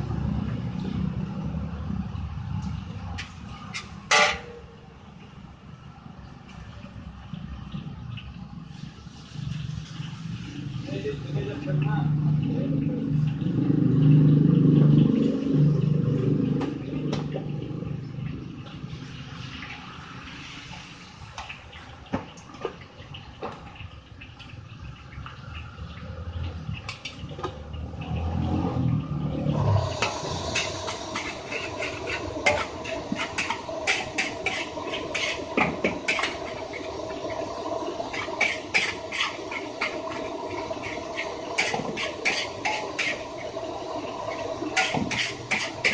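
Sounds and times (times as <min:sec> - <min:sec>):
vehicle engine passing by: 0:00.0 - 0:03.7, 0:09.0 - 0:21.1, 0:25.6 - 0:35.3
food sizzling: 0:26.1 - 0:45.9.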